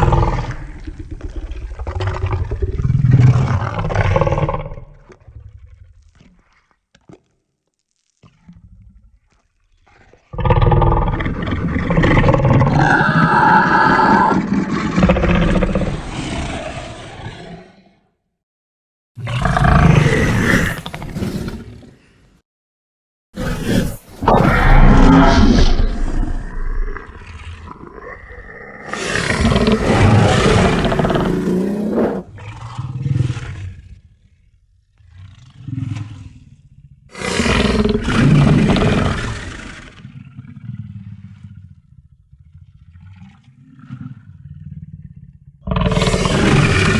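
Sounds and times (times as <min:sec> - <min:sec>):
low rumbling growls: 0:00.0 - 0:04.9, 0:24.2 - 0:36.8
creature roar: 0:12.0 - 0:17.9, 0:23.6 - 0:32.3.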